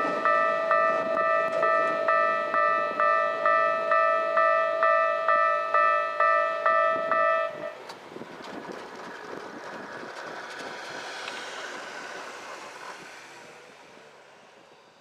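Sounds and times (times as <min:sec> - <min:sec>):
level crossing warning bell: 0:00.0 - 0:07.8.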